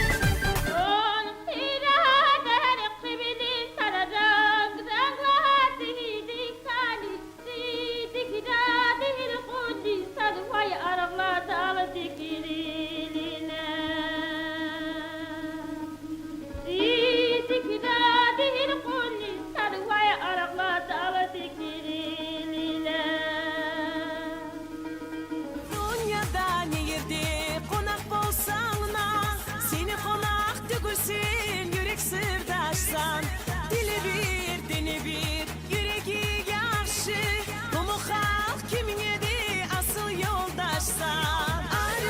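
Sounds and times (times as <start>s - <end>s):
person singing folk melody: 0.0s - 42.0s.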